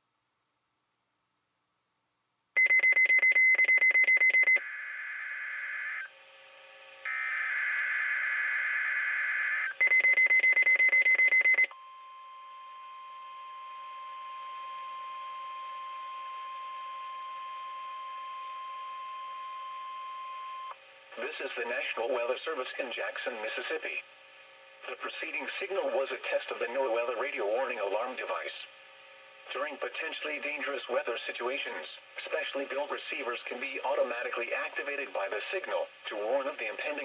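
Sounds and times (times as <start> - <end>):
steady warning alarm tone: 2.6 - 4.6, 9.0 - 20.8.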